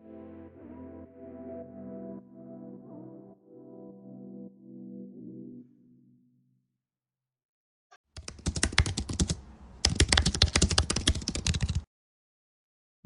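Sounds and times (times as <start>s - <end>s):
typing on computer keyboard: 8.2s - 11.9s.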